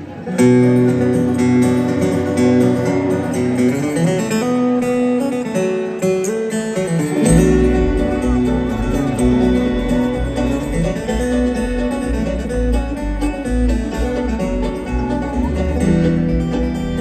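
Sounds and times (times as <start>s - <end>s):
acoustic guitar melody: 0.0s - 17.0s
deep bass: 7.2s - 17.0s.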